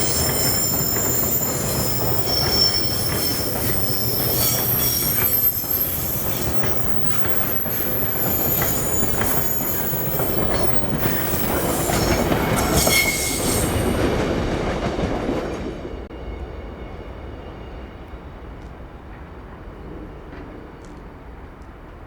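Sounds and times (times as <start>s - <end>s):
wheels clicking over rail joints: 0.0s - 13.1s
train wheels squealing: 0.0s - 14.2s
train rumbling: 0.0s - 22.0s.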